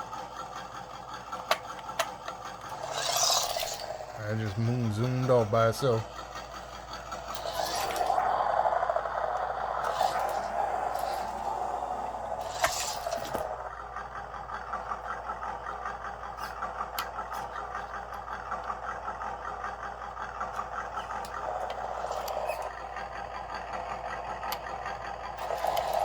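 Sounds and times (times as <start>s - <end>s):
electric motor whirring: 2.6s - 5.4s, 6.4s - 13.7s, 20.8s - 26.0s.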